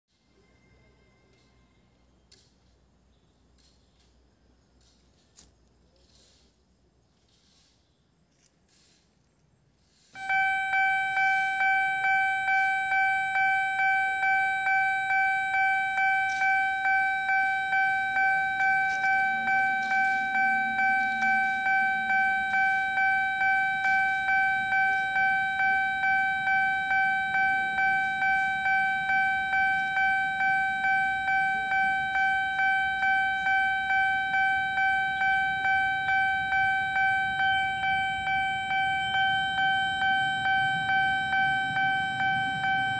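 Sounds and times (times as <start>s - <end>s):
level crossing alarm ringing: 10.2s - 42.9s.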